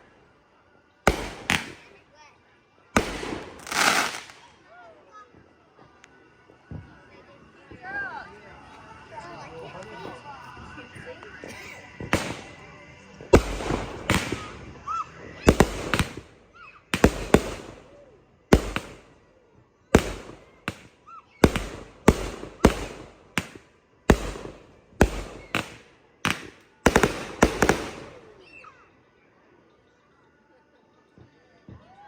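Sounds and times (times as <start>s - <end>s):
fireworks crackling hiss: 0.0s - 2.1s, 3.0s - 19.3s, 19.9s - 28.6s
fireworks bangs: 1.1s - 2.0s, 3.0s - 4.6s, 11.9s - 19.2s, 20.0s - 28.5s.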